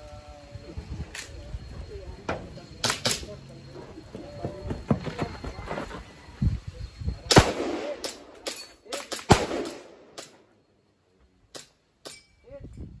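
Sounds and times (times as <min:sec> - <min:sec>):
loud gunshots: 0:07.3 - 0:08.4, 0:09.1 - 0:10.1
lighter sharp cracks: 0:07.3 - 0:10.4.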